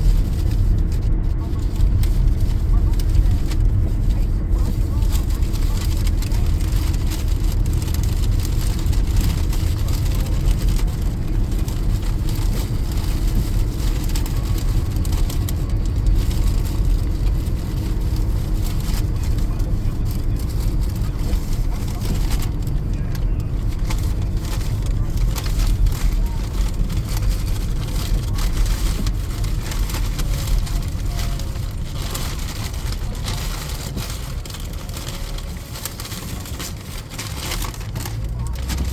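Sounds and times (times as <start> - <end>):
tyre and engine rumble: 0.0 - 38.9.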